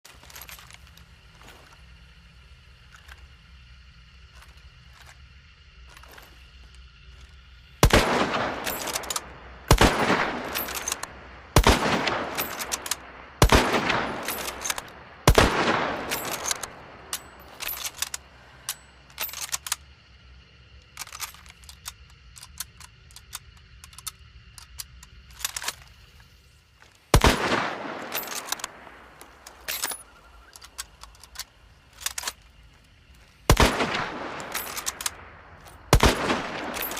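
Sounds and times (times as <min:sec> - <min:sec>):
metallic clicks of rifle bolt: 0:07.2 - 0:19.9, 0:20.8 - 0:26.0, 0:26.8 - 0:36.9
rifle shots with echo: 0:07.8 - 0:17.1, 0:27.1 - 0:29.1, 0:33.5 - 0:35.3, 0:35.9 - 0:36.9.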